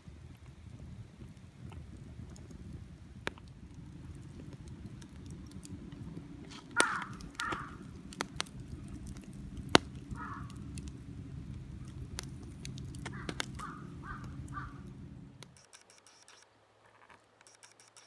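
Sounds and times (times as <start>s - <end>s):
low steady rumble: 0.0s - 15.6s
sharp crackling clicks: 0.4s - 16.4s
crow-like bird calling: 6.5s - 15.5s.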